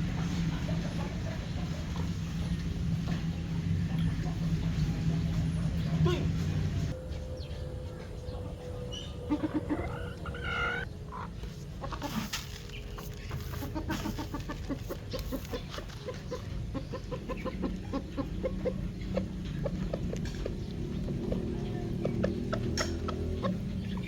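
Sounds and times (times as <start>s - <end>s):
hens clucking: 0.0s - 24.0s
hen call: 8.8s - 11.3s.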